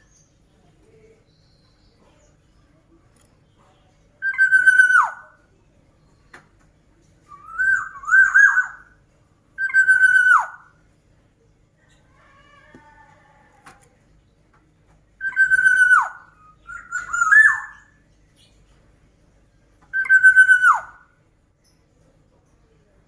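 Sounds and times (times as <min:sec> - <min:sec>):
bird whistling call: 0:04.2 - 0:05.2, 0:07.3 - 0:08.9, 0:09.6 - 0:10.6, 0:15.2 - 0:17.9, 0:19.9 - 0:21.0.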